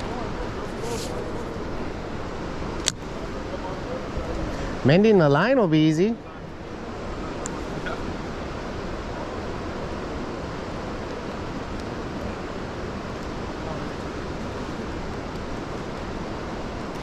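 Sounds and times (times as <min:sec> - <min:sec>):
fast-flowing river water rushing: 0:00.0 - 0:17.0.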